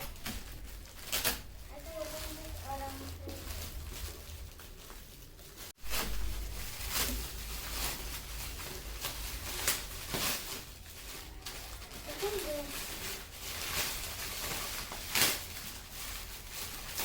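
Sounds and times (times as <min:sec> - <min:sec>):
gift packaging rustling: 0:00.0 - 0:17.0.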